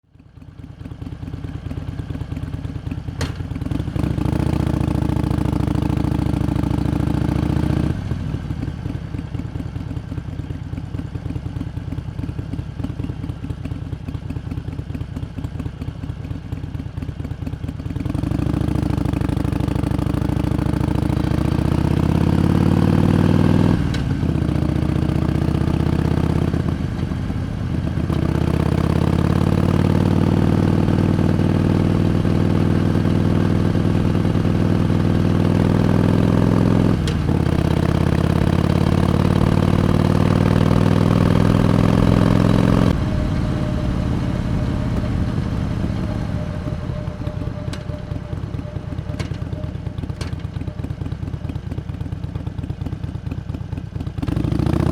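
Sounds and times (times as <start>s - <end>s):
motorcycle engine idling: 0.1s - 54.9s
motorcycle accelerating: 0.9s - 54.9s.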